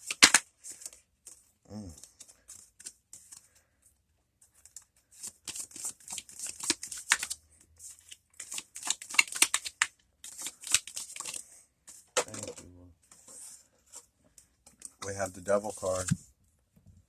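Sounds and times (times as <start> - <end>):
cards being shuffled: 0.0 - 3.6, 4.4 - 14.1.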